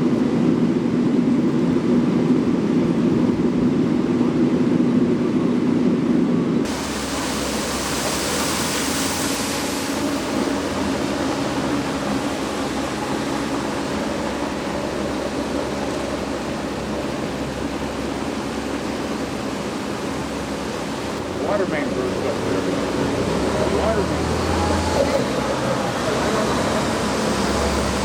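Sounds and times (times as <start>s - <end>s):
bright hiss: 6.7s - 10.8s
floodwater rushing: 6.7s - 28.0s.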